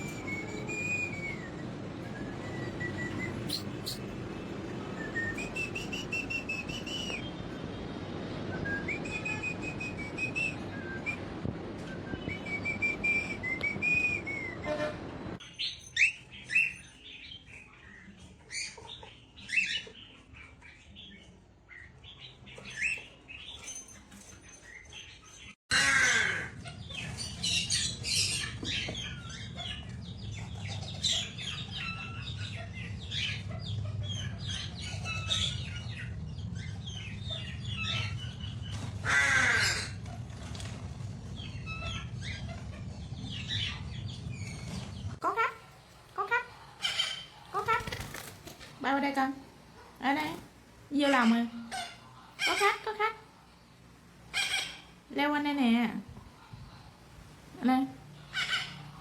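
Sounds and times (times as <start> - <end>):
parrots chirping and whistling: 0.0 - 7.2, 8.6 - 11.2, 12.0 - 14.9, 43.3 - 48.3, 54.3 - 54.9
steady background hum: 0.0 - 15.5, 24.7 - 59.0.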